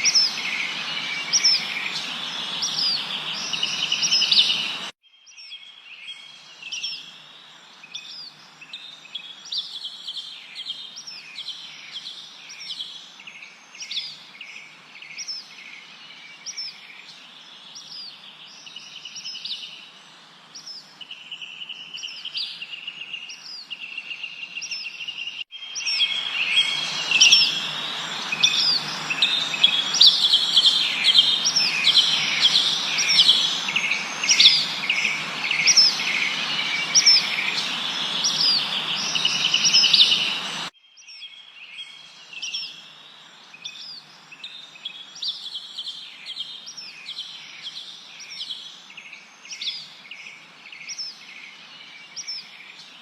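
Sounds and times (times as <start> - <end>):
background hiss: 0.0 - 4.9, 6.3 - 40.7
songbirds chirping: 0.0 - 53.0.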